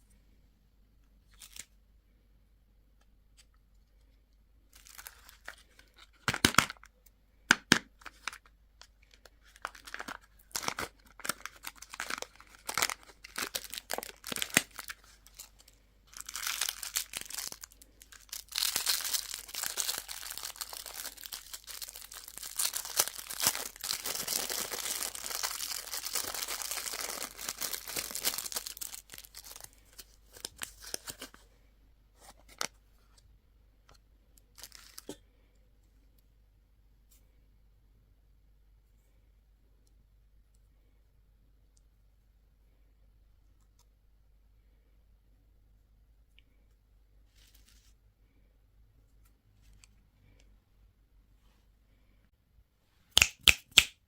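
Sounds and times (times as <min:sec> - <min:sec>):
candy wrapper snaps and rustles: 0:01.3 - 0:01.8, 0:04.7 - 0:06.9, 0:07.5 - 0:31.3, 0:53.2 - 0:54.0
wrapper crinkling and tearing: 0:04.8 - 0:06.9, 0:08.0 - 0:31.4, 0:34.5 - 0:35.2.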